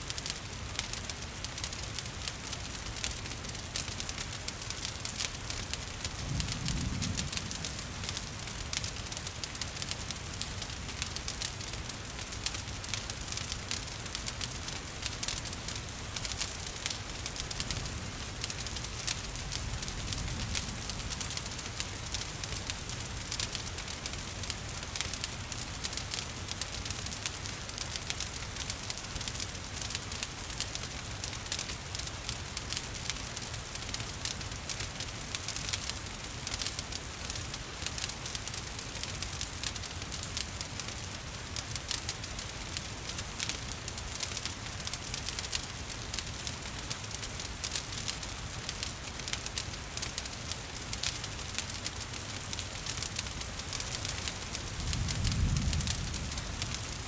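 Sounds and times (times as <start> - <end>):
steady rain falling: 0.0 - 57.0
wood fire crackling and popping: 0.0 - 57.0.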